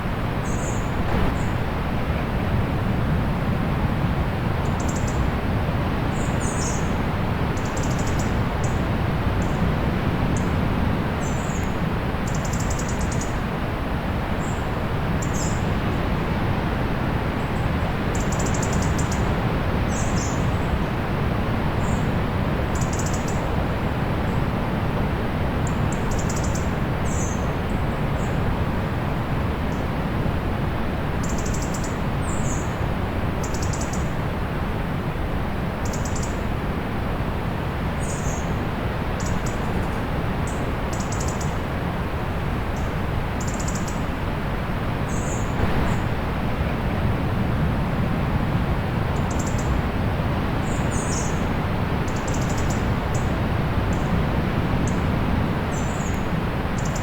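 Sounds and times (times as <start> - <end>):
distant sea surf: 0.0 - 57.0
small birds chirping: 0.4 - 1.6, 45.1 - 46.1, 50.6 - 51.5, 55.7 - 57.0.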